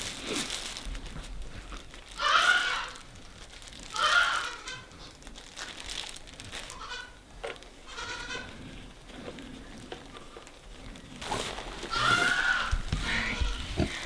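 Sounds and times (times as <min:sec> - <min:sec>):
farm animal calling: 0:02.2 - 0:03.0, 0:03.9 - 0:04.9, 0:11.8 - 0:14.0
soft rustling: 0:08.4 - 0:14.0.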